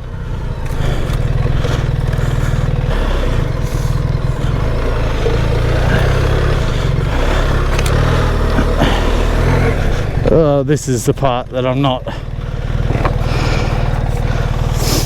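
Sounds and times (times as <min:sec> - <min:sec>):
motorcycle engine under load: 0:00.0 - 0:15.0.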